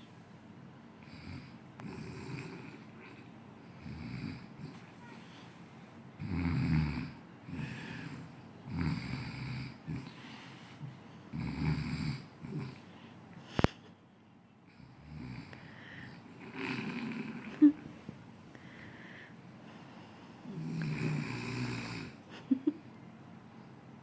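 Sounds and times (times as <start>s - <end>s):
soft breathing: 4.5s - 5.8s, 7.5s - 8.4s, 9.8s - 11.2s, 12.7s - 13.9s, 15.5s - 16.4s, 17.3s - 20.6s
loud rasping snore: 6.2s - 7.8s, 8.7s - 10.1s, 11.3s - 12.8s, 16.4s - 17.6s, 20.5s - 22.2s.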